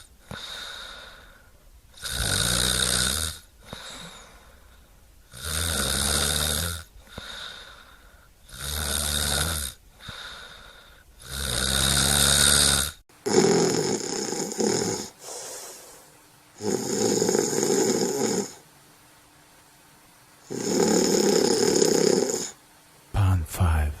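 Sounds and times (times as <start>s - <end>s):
person snoring: 2.0s - 4.6s, 5.3s - 18.6s, 20.4s - 22.6s.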